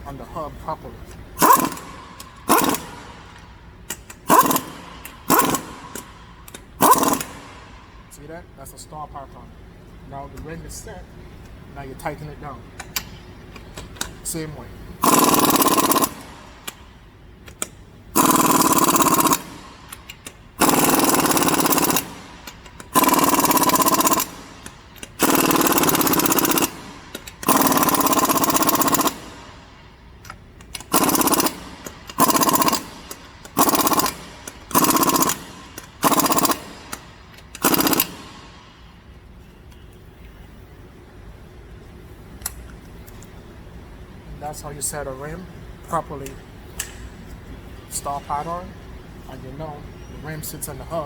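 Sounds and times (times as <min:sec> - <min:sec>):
impact wrench hammering: 0:01.4 - 0:08.0, 0:15.0 - 0:39.1.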